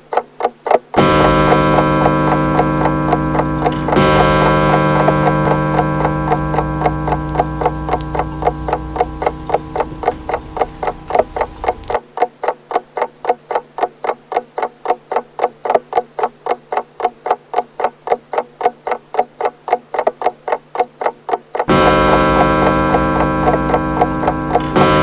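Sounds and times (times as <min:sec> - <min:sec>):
pendulum clock ticking: 0:00.0 - 0:25.0
clock gong striking: 0:01.0 - 0:12.0, 0:21.7 - 0:25.0
low ringing: 0:01.0 - 0:12.0, 0:21.7 - 0:25.0.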